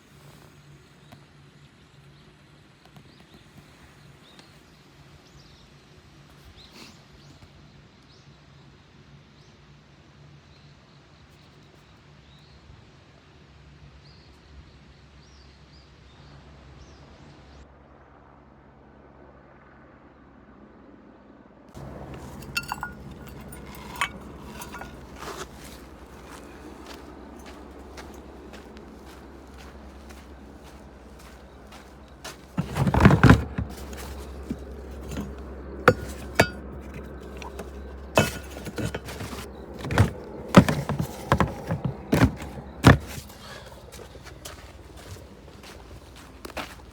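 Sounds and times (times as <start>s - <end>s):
sharp clinks: 21.8s - 28.2s
rustling: 21.8s - 46.9s.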